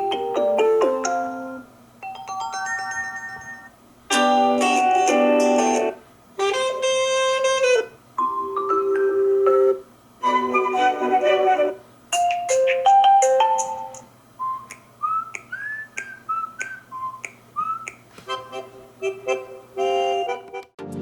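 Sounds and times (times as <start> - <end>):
repeating chord pattern ringtone: 0.0 - 5.9, 8.2 - 14.0
chiming ringtone melody: 0.2 - 5.8, 8.2 - 11.2, 12.2 - 14.0
rising whistle-like chirps: 14.4 - 18.0.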